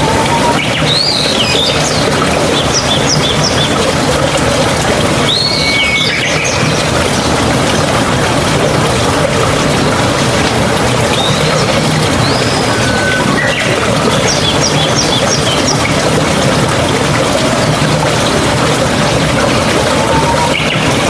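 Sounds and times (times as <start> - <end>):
rushing water: 0.0 - 21.0
bird whistled calls: 5.3 - 6.7, 12.2 - 15.6.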